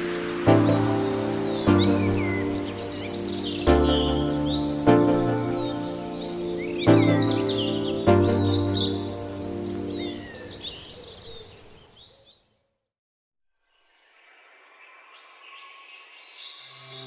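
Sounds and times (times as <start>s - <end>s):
background music: 0.0s - 10.6s
faint hiss: 0.0s - 11.7s
birdsong chirping: 0.0s - 12.6s.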